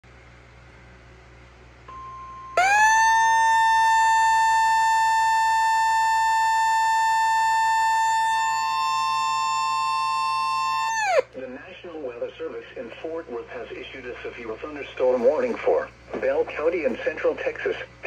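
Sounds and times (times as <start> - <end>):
steady warning alarm tone: 1.9 - 11.2
siren winding up: 1.9 - 11.3.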